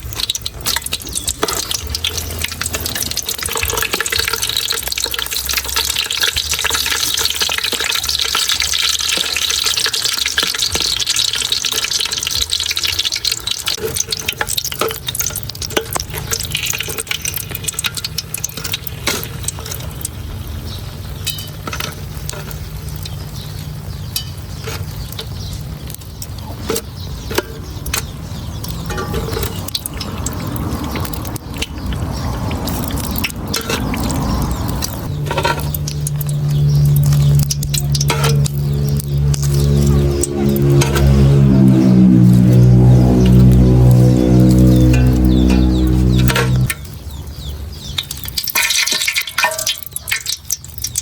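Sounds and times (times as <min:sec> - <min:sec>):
utensils clinking against cookware: 0:00.0 - 0:20.1, 0:21.2 - 0:23.2, 0:26.5 - 0:31.9, 0:32.7 - 0:41.1, 0:48.0 - 0:51.0
food being stirred: 0:00.0 - 0:47.0, 0:48.0 - 0:51.0
light sizzle: 0:00.0 - 0:51.0
steady low hum: 0:35.2 - 0:46.8.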